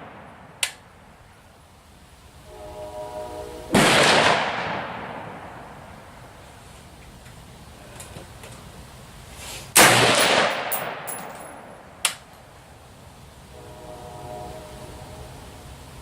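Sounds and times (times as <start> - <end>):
rifle shot with echo: 3.8 - 5.5, 9.8 - 11.2.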